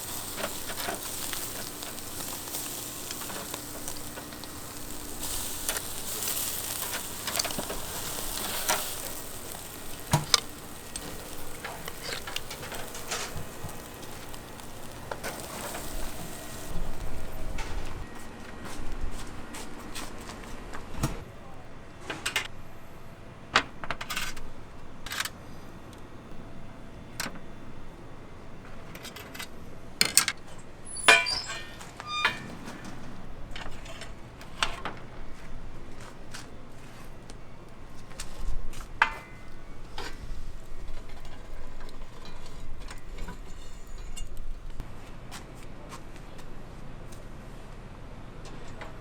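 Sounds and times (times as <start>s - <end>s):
metal objects clinking and clattering: 0.0s - 17.8s, 29.0s - 35.0s.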